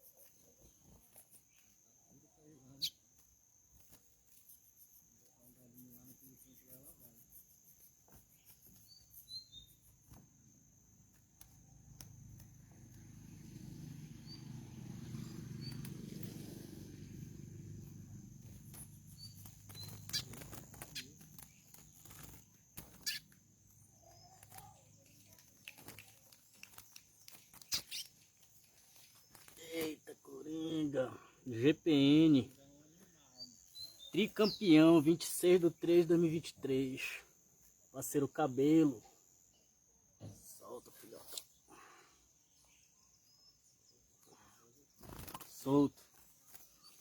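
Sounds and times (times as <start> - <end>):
high bird chirps: 2.7 - 3.1, 8.3 - 10.2, 14.1 - 16.6, 17.4 - 29.5, 33.3 - 34.8.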